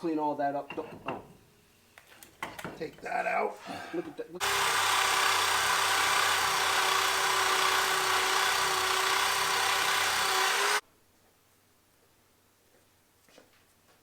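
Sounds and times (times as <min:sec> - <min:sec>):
power tool high whine: 0:04.4 - 0:10.8.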